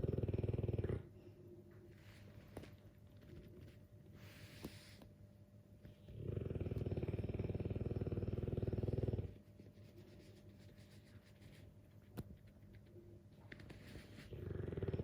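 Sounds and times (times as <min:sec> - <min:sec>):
dog snoring: 0:00.0 - 0:01.1, 0:06.0 - 0:09.4, 0:14.2 - 0:15.0.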